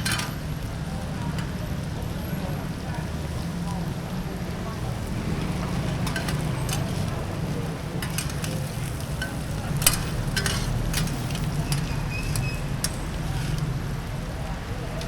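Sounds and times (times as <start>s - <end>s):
food sizzling in a wok: 2.6s - 14.4s
metal spatula scraping a pan: 5.0s - 13.8s.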